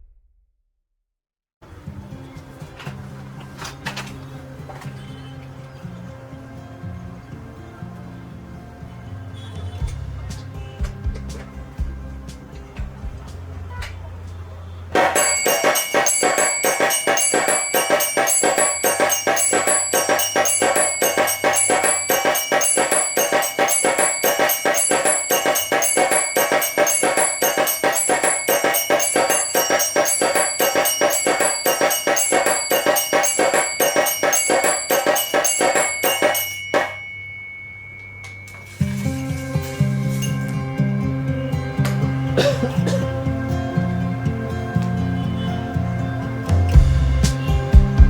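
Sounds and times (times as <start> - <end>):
small drum beating fast: 15.0 - 37.0
bells ringing: 15.0 - 40.7.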